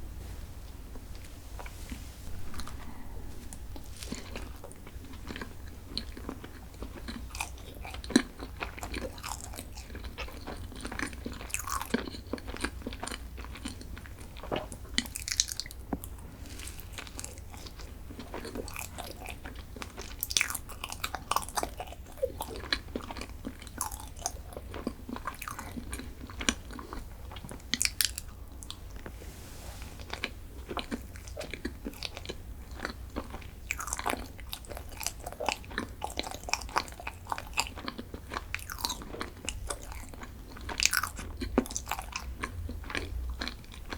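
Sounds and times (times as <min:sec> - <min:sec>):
steady low hum: 0:00.0 - 0:10.6
crunchy chewing: 0:01.2 - 0:29.2, 0:30.0 - 0:43.9.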